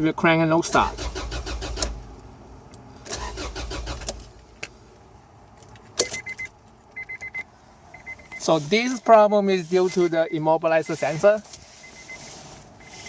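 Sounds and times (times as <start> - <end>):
starter motor cranking engine: 0.7 - 2.0, 3.1 - 4.3.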